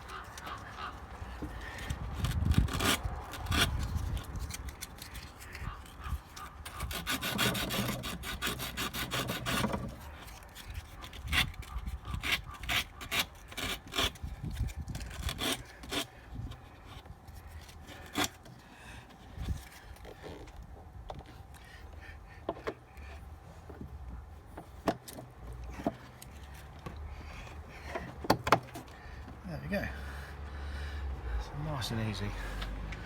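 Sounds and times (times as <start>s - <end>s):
sandpaper rubbing on rusty metal: 6.6s - 14.2s.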